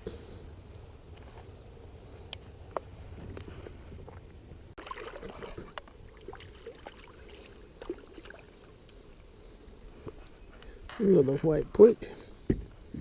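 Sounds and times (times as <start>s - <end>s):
water lapping against boat: 4.8s - 9.2s.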